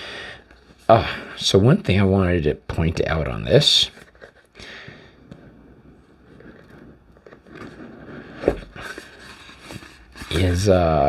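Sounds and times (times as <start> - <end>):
packaging scraping and rustling: 3.5 - 10.9.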